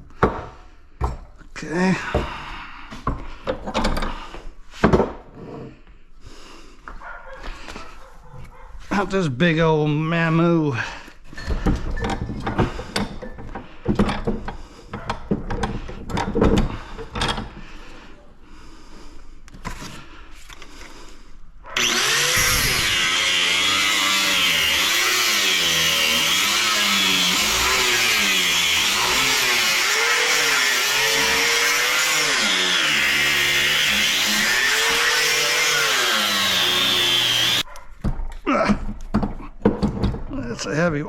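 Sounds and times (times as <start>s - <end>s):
power tool cutting metal: 21.8s - 37.6s.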